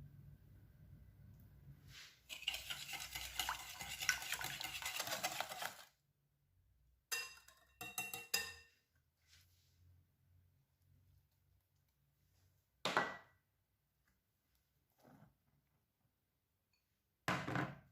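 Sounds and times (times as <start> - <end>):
utensil stirring in bowl: 2.2 - 6.0
utensil clinking on bowl: 2.3 - 5.9, 7.1 - 8.7.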